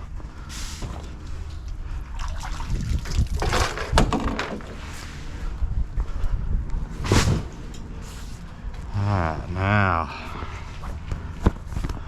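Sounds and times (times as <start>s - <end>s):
pool water sloshing and dripping: 1.9s - 3.8s
water splashing: 2.2s - 3.5s.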